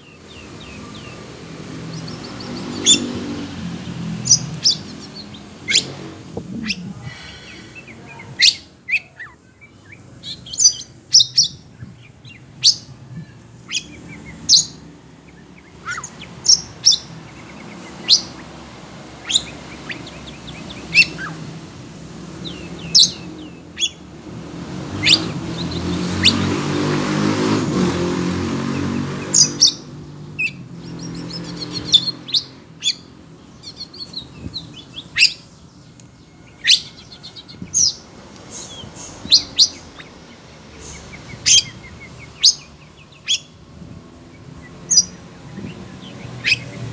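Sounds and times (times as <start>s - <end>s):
bird chirps and whistled calls: 0.0s - 21.6s, 22.2s - 24.1s, 24.9s - 46.9s
rumbling rushing noise: 0.3s - 8.0s.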